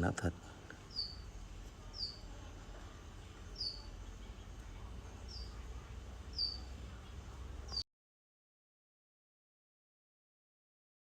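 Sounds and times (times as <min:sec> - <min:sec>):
low hum: 0:00.2 - 0:07.8
small bird chirping: 0:00.7 - 0:07.8.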